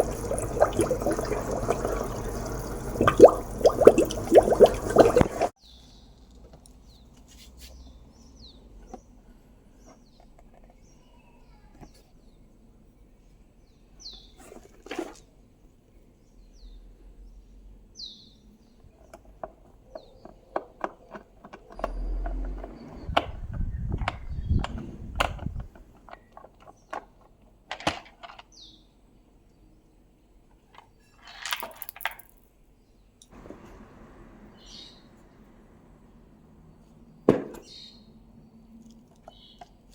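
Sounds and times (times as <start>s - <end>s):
small birds chirping: 0.0s - 12.5s, 13.6s - 14.6s, 21.7s - 27.0s, 32.9s - 39.9s
things being handled: 31.0s - 32.4s.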